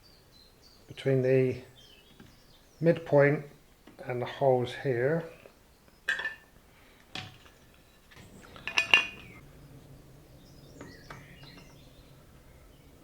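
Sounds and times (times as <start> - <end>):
light metal ticks and scrapes: 7.1 - 9.4
metal clinks on metal plate: 8.6 - 9.4.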